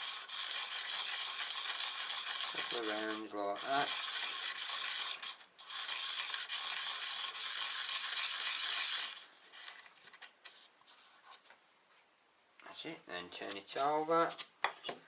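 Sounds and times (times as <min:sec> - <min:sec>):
cutter scraping on sharpening card: 0:00.0 - 0:09.2.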